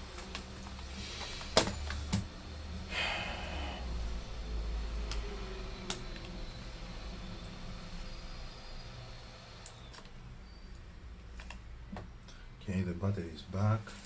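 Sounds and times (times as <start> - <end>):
low hum: 2.2 - 12.4.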